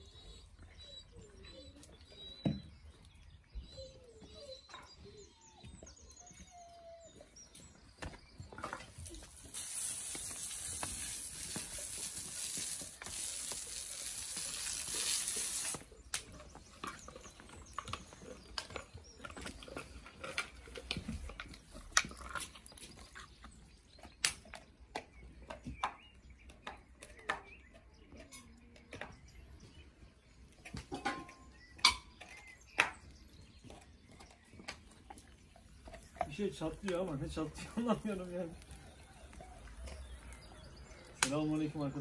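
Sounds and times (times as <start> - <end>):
fire crackling: 9.0 - 16.3, 35.8 - 41.8.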